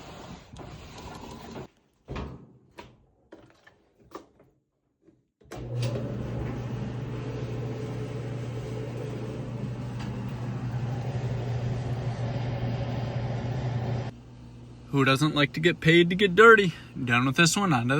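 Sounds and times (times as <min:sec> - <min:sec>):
machine humming: 0:05.6 - 0:17.9.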